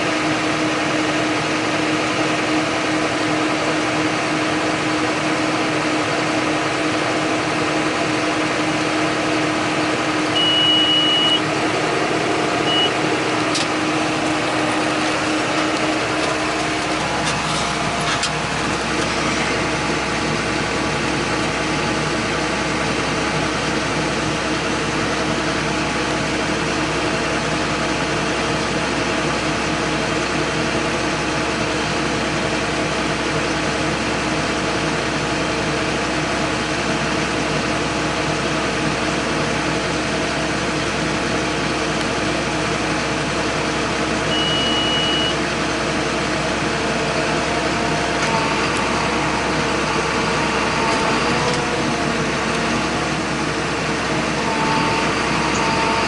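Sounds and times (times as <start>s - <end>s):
tractor diesel engine running: 0.0s - 56.0s
short high beep: 10.4s - 11.5s, 12.6s - 13.0s, 44.3s - 45.4s.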